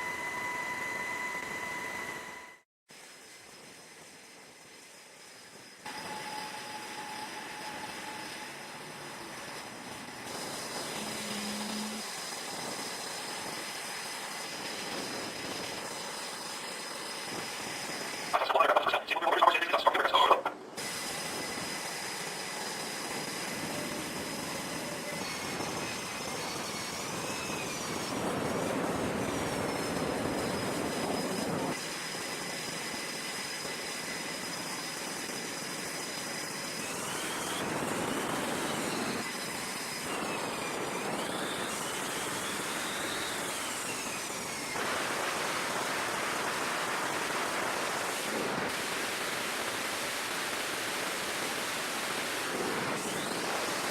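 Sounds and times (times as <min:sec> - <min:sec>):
high turbine whines: 0:03.4 - 0:50.4
jet engines rushing: 0:18.4 - 0:21.1.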